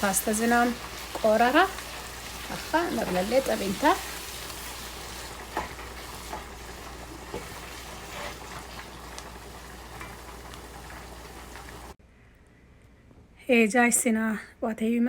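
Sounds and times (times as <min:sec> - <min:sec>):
food sizzling in a frying pan: 0:00.0 - 0:12.0.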